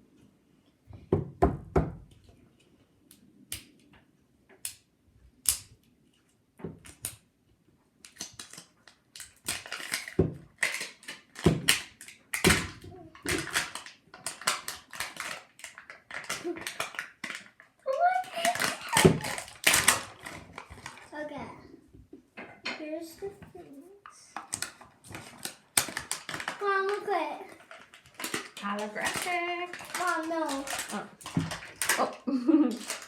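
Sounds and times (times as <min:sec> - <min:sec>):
packaging crinkling: 0:08.0 - 0:21.1, 0:24.4 - 0:33.0
packaging knocks: 0:18.4 - 0:21.0, 0:24.4 - 0:27.0, 0:27.6 - 0:32.1.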